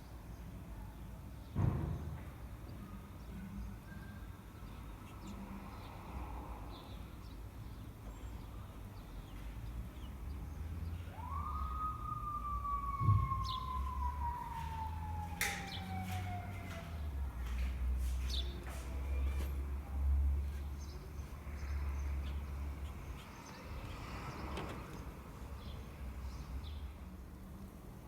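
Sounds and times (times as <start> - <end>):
distant siren wailing: 11.0 - 17.3.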